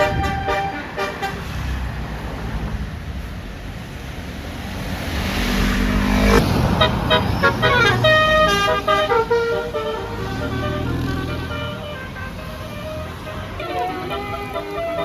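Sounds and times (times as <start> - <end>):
multi-tone horn melody: 0.0 - 1.8, 6.6 - 15.0
bus engine running: 0.0 - 15.0.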